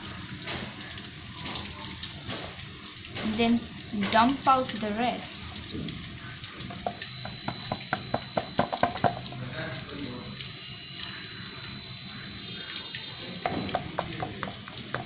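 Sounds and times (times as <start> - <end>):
thin high whine: 6.8 - 14.3.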